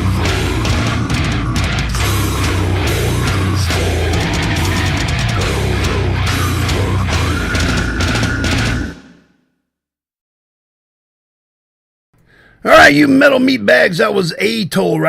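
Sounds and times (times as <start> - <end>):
dense drumming: 0.0 - 9.2
distorted electric guitar: 0.0 - 9.2.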